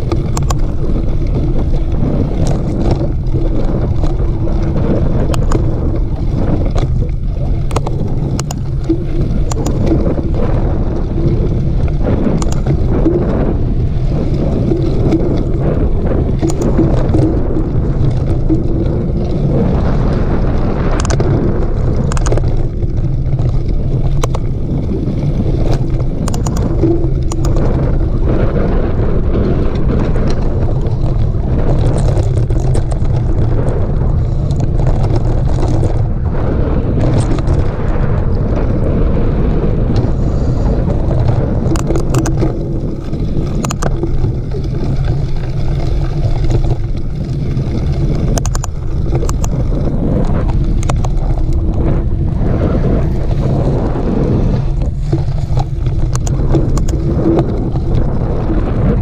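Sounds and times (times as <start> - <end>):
bike clicks and rattles: 0.0 - 36.2, 36.9 - 58.9
wind rushing over microphone: 0.0 - 59.0.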